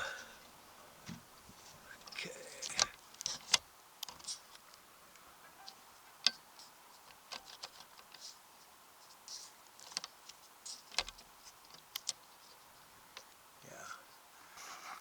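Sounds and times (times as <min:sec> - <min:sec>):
soft rustles of hands: 0:00.0 - 0:02.9, 0:08.0 - 0:12.9.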